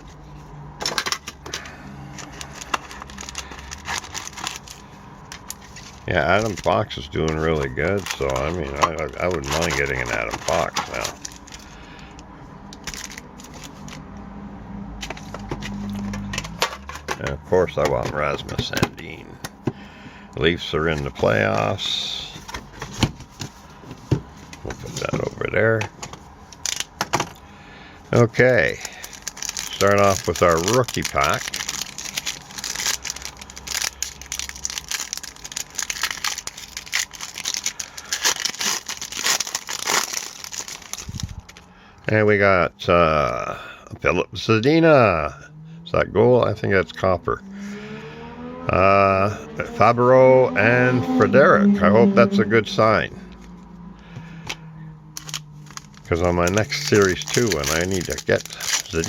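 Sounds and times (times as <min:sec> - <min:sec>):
card packs clicking and rustling: 0:00.8 - 0:14.2, 0:15.0 - 0:19.7, 0:20.8 - 0:27.4, 0:28.2 - 0:41.7, 0:53.6 - 0:59.0.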